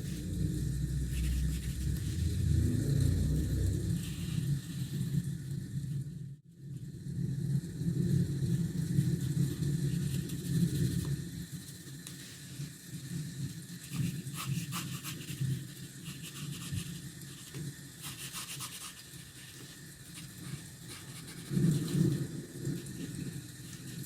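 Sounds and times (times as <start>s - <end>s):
pencil scratching on paper: 1.1s - 2.2s, 13.8s - 22.2s.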